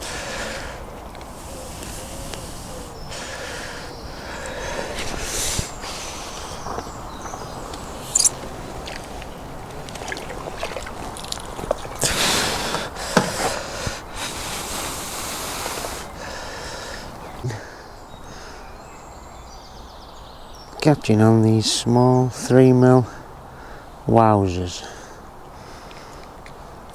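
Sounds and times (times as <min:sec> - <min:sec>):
hissing bursts: 0:01.2 - 0:03.7, 0:12.0 - 0:16.2.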